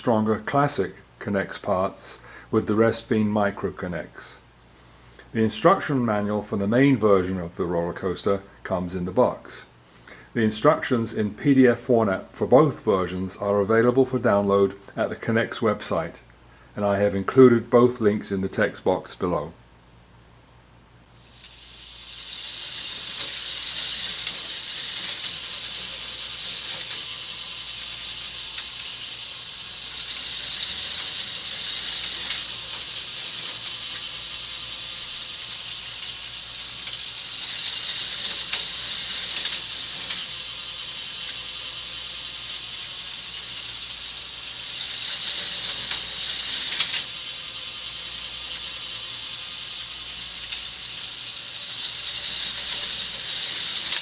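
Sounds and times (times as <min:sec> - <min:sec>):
ratchet clicking of lift: 0:21.2 - 0:54.0
toy roller coaster rattling: 0:21.2 - 0:54.0.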